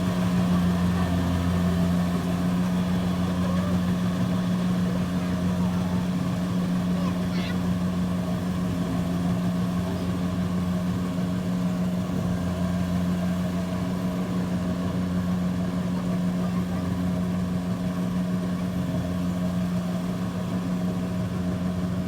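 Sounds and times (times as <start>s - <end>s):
engine humming steadily: 0.0s - 22.0s.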